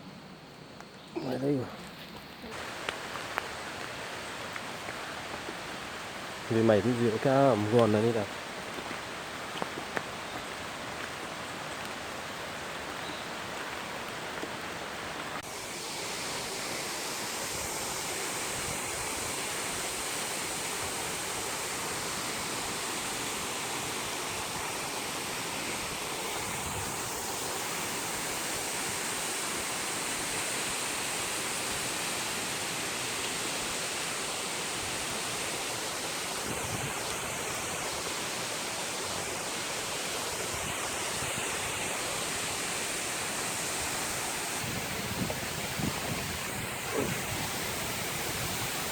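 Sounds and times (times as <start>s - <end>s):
waterfall rushing: 2.5s - 48.9s.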